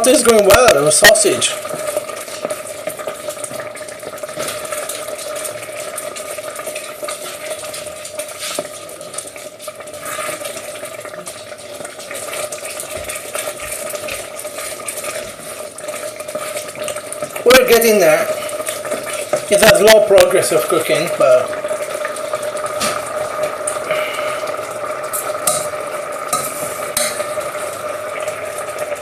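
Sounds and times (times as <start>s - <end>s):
rice sizzling in a pan: 0.0s - 29.0s
spoon scraping a pan: 25.1s - 27.4s.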